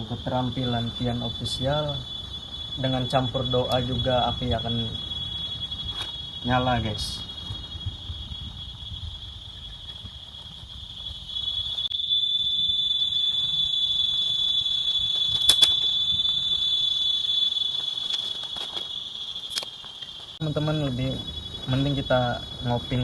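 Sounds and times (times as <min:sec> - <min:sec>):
insects droning: 0:00.0 - 0:23.0
sharp click: 0:15.3 - 0:15.9, 0:19.5 - 0:19.7.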